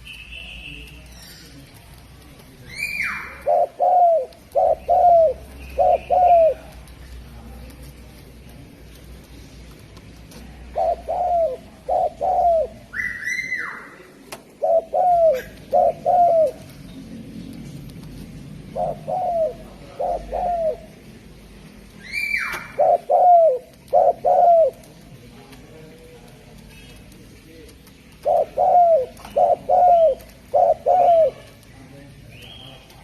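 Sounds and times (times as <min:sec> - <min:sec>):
dove cooing: 0:02.8 - 0:06.9, 0:10.6 - 0:13.8, 0:14.5 - 0:16.8, 0:18.6 - 0:21.1, 0:22.1 - 0:25.1, 0:28.1 - 0:31.6.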